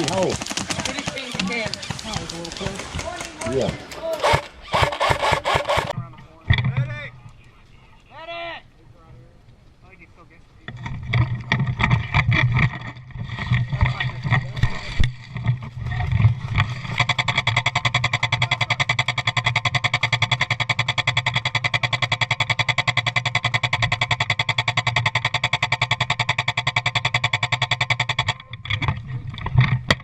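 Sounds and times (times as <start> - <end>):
airsoft gun full-auto burst: 4.1 - 5.9.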